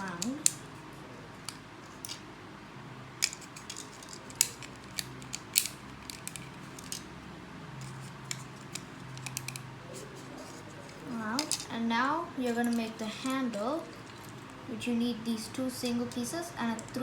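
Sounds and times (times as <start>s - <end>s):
plastic bricks clicking: 3.2s - 7.1s, 7.8s - 9.7s, 10.8s - 11.7s.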